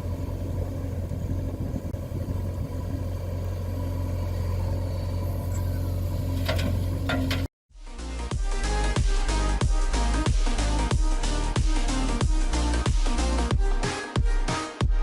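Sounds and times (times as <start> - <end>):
vehicle engine idling: 0.0 - 7.5.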